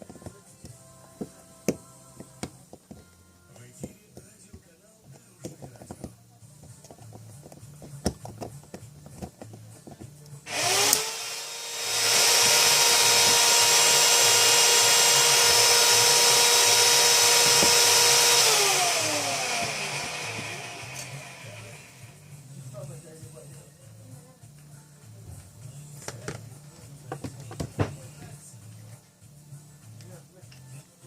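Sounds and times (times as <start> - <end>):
handling clicks and taps: 3.8 - 11.0
cordless drill motor whine: 10.5 - 22.2.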